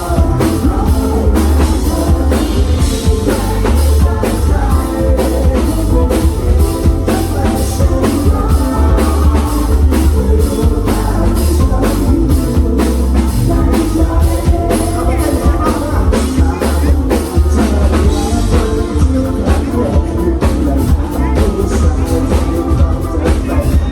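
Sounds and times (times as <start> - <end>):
bass guitar: 0.0 - 23.9
drum kit beat: 0.0 - 23.9
electric guitar: 0.0 - 23.9.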